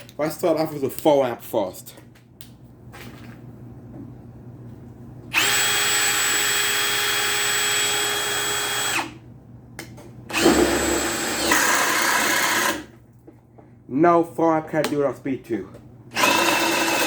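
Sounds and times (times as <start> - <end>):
hammer drill whining: 5.3 - 9.2, 10.3 - 12.9, 16.1 - 17.0.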